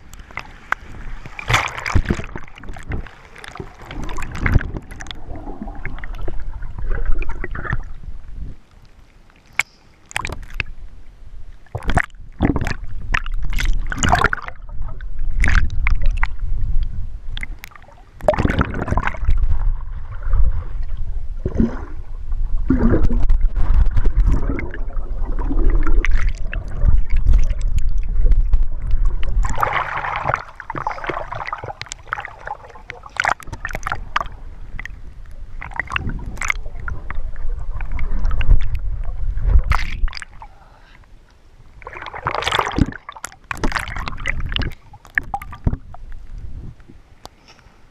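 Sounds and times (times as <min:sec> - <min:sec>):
seawater surging and splashing: 0:00.0 - 0:08.1, 0:17.4 - 0:41.0
water gurgling: 0:00.0 - 0:08.6, 0:09.5 - 0:40.9, 0:41.8 - 0:46.4.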